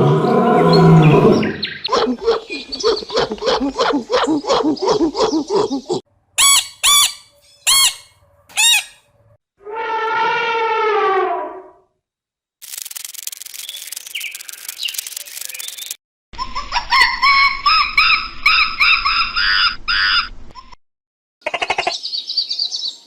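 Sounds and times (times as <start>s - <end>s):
harsh bird calls: 0.1s - 9.0s.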